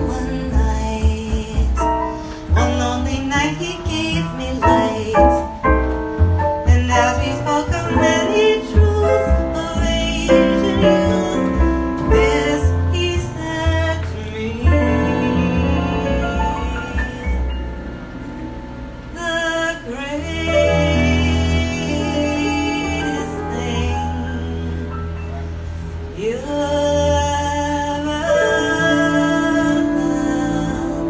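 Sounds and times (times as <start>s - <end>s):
jazz keyboard line: 0.0s - 26.2s
walking bass: 0.0s - 31.0s.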